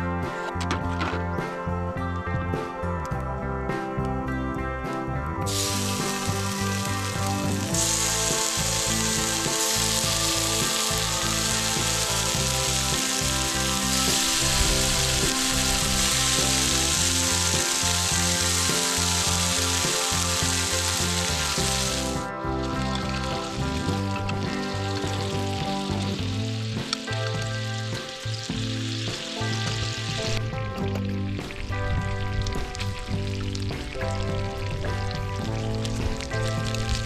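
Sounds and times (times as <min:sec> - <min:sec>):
guitar music: 0:00.0 - 0:37.0
meat sizzling on a grill: 0:05.5 - 0:30.4.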